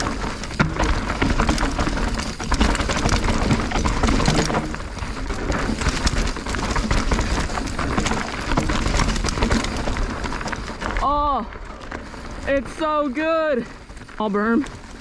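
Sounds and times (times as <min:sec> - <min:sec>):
bike tyres rolling over rock: 0:00.0 - 0:15.0.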